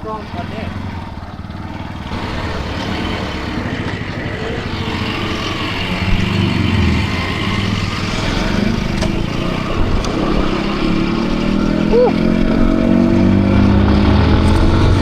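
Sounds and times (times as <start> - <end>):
motorcycle engine running: 0.0 - 15.0
wind noise on microphone: 8.1 - 11.6.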